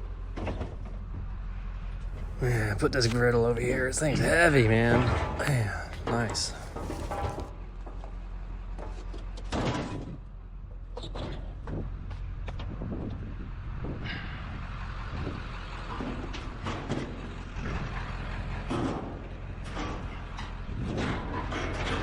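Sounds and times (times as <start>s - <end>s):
low engine hum: 0.0s - 21.5s
scrap metal knocks and clunks: 2.1s - 10.2s, 15.2s - 22.0s.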